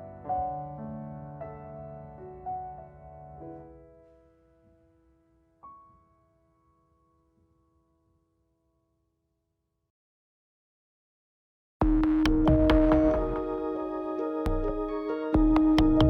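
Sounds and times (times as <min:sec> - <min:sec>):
solo piano chords: 0:00.0 - 0:08.3, 0:12.3 - 0:16.0.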